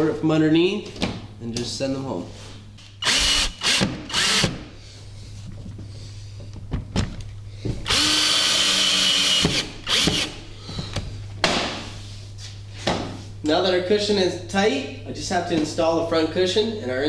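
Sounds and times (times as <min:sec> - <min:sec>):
power drill driving screws: 0:03.0 - 0:04.6, 0:07.9 - 0:10.4.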